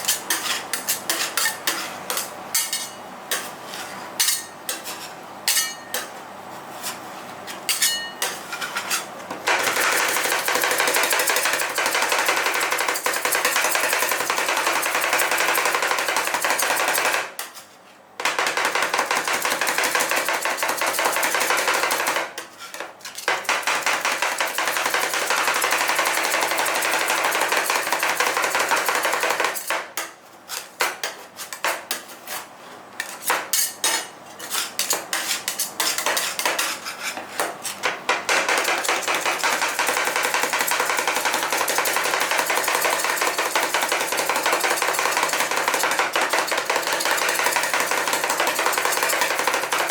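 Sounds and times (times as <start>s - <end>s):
metal spatulas tapping on cold plate: 0.0s - 3.5s, 5.5s - 6.1s, 7.7s - 8.4s, 37.8s - 49.9s.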